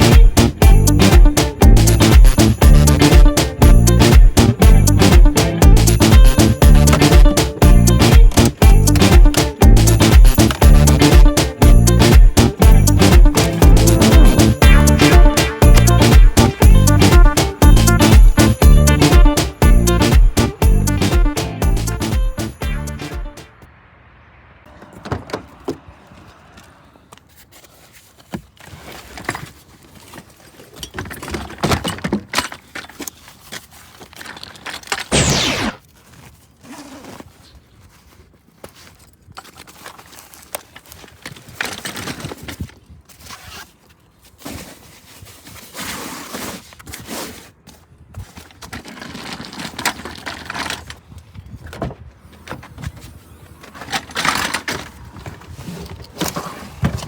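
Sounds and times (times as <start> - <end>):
camping gear knocking and clinking: 0.0 - 22.8, 24.7 - 26.3, 28.2 - 35.1, 38.6 - 43.6, 47.6 - 57.0
scraping clatter: 52.4 - 57.0.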